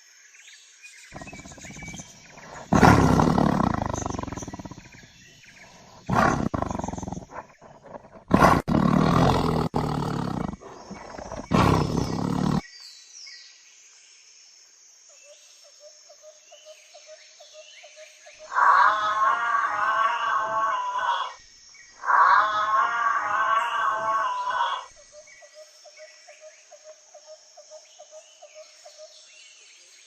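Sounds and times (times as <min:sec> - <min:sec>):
large animal roaring: 0:01.2 - 0:05.0, 0:05.8 - 0:12.6, 0:18.5 - 0:21.3, 0:22.0 - 0:24.9
wavering animal call: 0:22.0 - 0:24.9.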